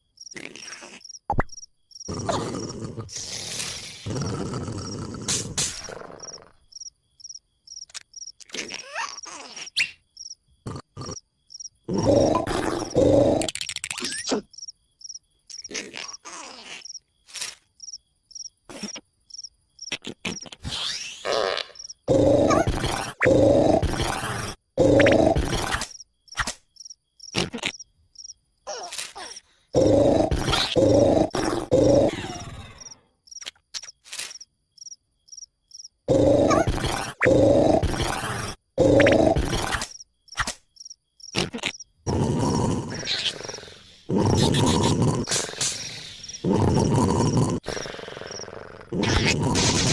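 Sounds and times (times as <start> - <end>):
cricket chirping: 0.0 - 49.9
cartoon snoring: 2.1 - 6.6, 10.6 - 11.3, 11.9 - 13.5, 21.2 - 25.9, 29.7 - 33.0, 36.1 - 39.9, 41.4 - 49.9
cartoon clicks and sliding squeaks: 7.8 - 10.0, 13.3 - 14.5, 15.5 - 17.7, 19.8 - 21.9, 23.8 - 26.6, 27.3 - 27.9, 28.7 - 29.4, 32.8 - 34.5, 36.5 - 40.6, 41.3 - 41.9.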